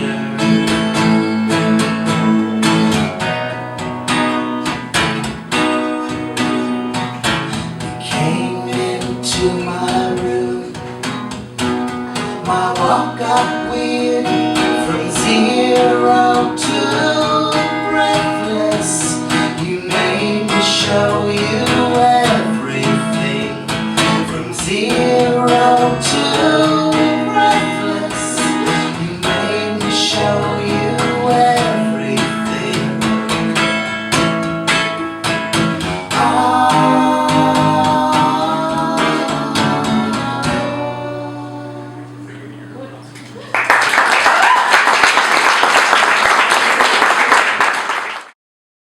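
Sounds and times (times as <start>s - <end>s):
acoustic guitar: 0.0s - 48.3s
person singing: 7.5s - 11.1s, 12.2s - 33.6s, 35.8s - 42.9s.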